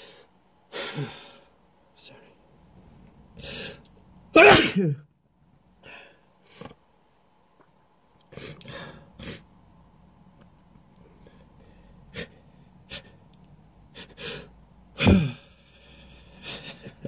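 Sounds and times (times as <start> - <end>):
person sneezing: 4.4 - 5.0, 15.0 - 15.5.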